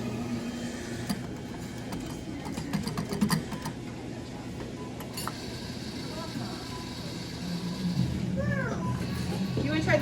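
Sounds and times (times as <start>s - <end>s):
steady electrical hum: 0.0s - 10.0s.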